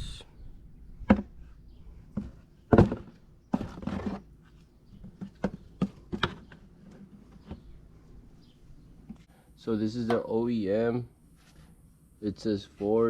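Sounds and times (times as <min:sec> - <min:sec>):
scraping rustle: 0:01.2 - 0:09.3, 0:11.3 - 0:11.9.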